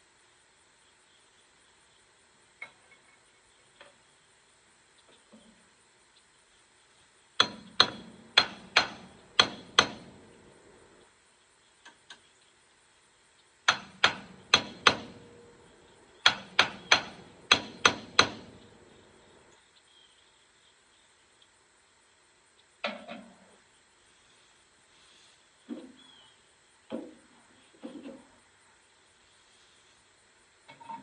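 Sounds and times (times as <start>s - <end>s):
hammer striking metal: 7.4s - 10.1s, 13.7s - 15.3s, 16.2s - 18.6s.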